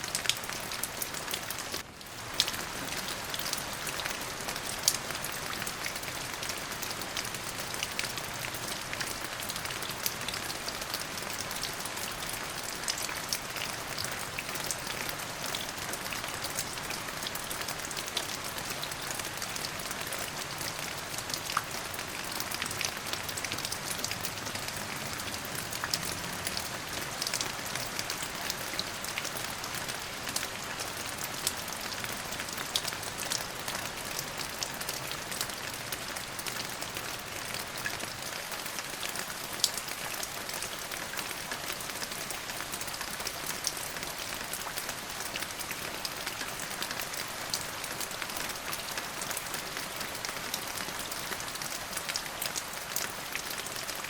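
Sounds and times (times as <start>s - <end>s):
raindrops pattering: 0.0s - 54.0s.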